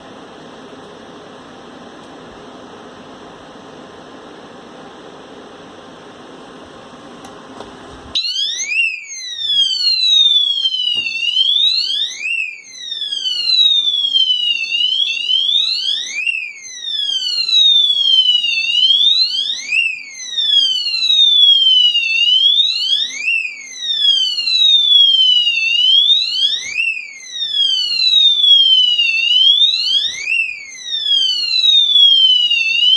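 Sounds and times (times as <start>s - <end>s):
alarm siren wailing: 8.2s - 32.9s.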